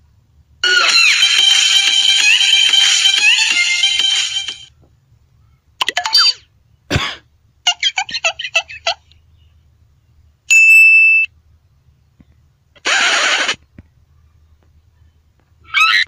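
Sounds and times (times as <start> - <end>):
short hissing burst: 12.8 - 13.6.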